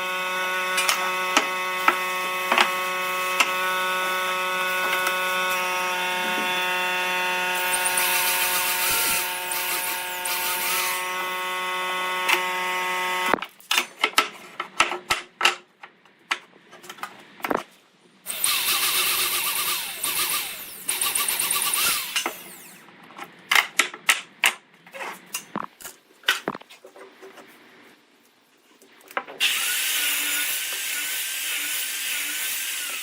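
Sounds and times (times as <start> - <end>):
rough noisy working sound: 0.0 - 14.0
power tool motor whining: 0.2 - 13.4, 18.3 - 22.8, 29.4 - 33.0.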